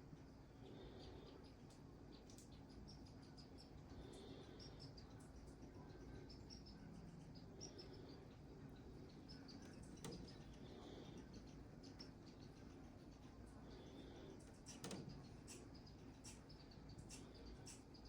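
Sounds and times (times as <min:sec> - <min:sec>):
faint birds chirping: 0:00.0 - 0:18.0.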